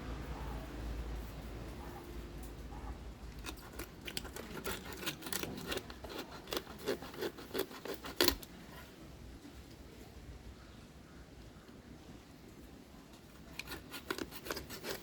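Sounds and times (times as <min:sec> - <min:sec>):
knife cutting through fish: 0:03.4 - 0:08.5, 0:13.4 - 0:15.0.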